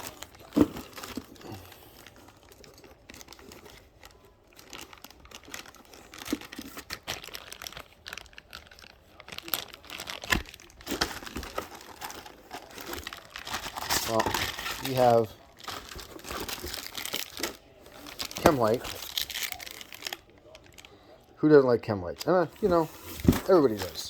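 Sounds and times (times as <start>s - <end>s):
packaging crinkling and tearing: 0.0s - 21.0s, 22.2s - 24.0s.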